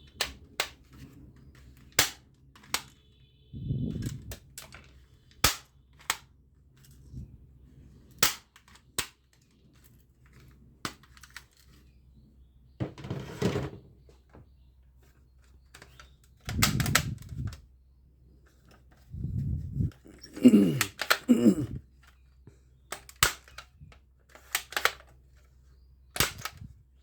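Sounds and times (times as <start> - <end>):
toy gun plastic clicks: 1.6 - 3.1, 4.0 - 6.9, 8.1 - 11.8, 20.8 - 21.3, 22.9 - 25.4, 26.1 - 26.7.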